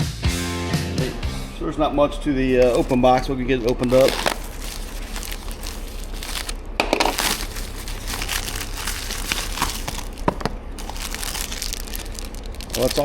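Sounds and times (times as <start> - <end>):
cardboard box packaging crinkling: 2.6 - 13.0.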